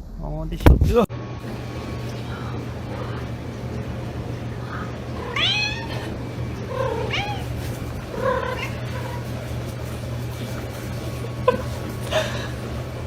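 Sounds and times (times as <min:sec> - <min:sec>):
steady low hum: 0:00.0 - 0:13.0
cat meowing: 0:04.8 - 0:09.3.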